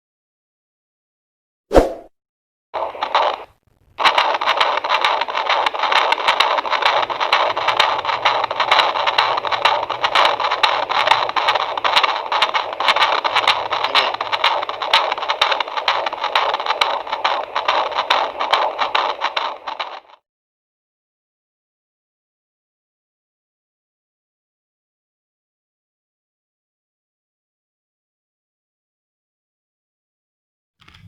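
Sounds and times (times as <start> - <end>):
burst of static: 2.8 - 20.1
fetal heartbeat pulsing over hiss: 2.8 - 20.2.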